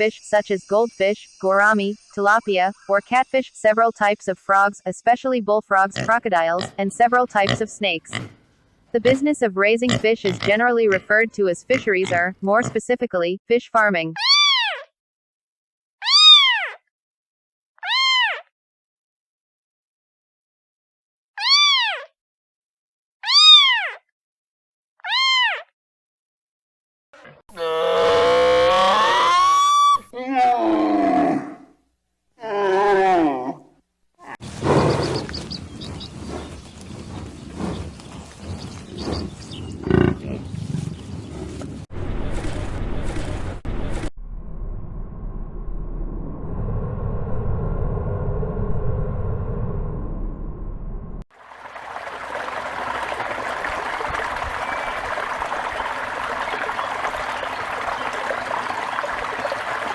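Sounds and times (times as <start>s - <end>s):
farm animal calls: 9.0s - 12.8s, 51.5s - 59.9s.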